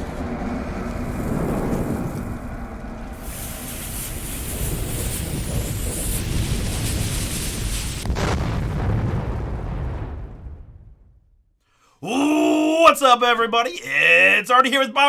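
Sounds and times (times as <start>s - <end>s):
thunder-like rumble: 0.0s - 11.2s
hiss: 3.1s - 8.1s.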